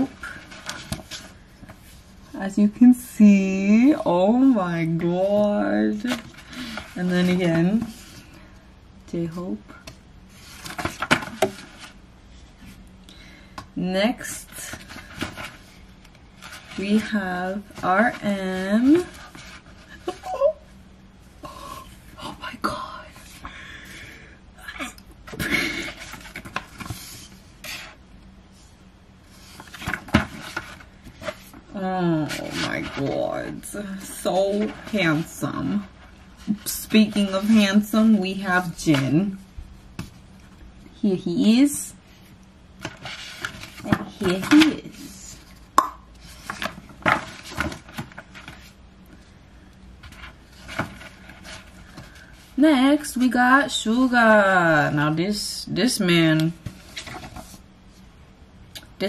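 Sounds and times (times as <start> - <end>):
paper and card rustling: 0.0 - 2.2, 4.5 - 8.4, 9.8 - 12.0, 14.2 - 20.6, 25.3 - 28.0, 29.3 - 39.4, 42.8 - 45.6, 46.2 - 48.8, 50.0 - 53.8, 56.4 - 57.6.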